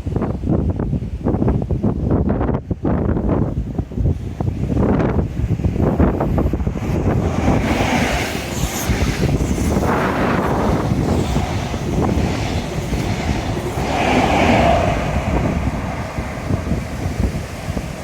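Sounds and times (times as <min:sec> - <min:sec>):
wind buffeting microphone: 0:00.0 - 0:18.0
waves washing against seawall: 0:03.6 - 0:18.0.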